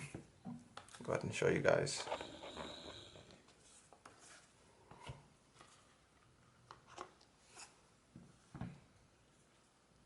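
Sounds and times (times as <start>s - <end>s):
small tools rubbing and scraping: 1.7s - 4.5s.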